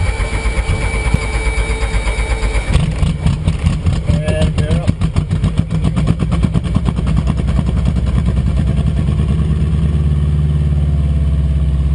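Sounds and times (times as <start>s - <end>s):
helicopter piston engine idling: 0.0s - 9.4s.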